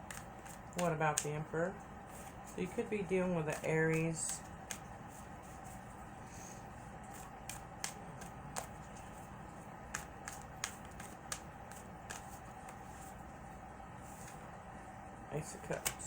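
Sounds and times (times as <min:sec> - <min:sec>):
cards snapping and clicking: 0:00.0 - 0:01.4, 0:03.5 - 0:04.9, 0:07.1 - 0:09.1, 0:09.9 - 0:12.8, 0:15.7 - 0:16.0
steady low hum: 0:00.0 - 0:16.0.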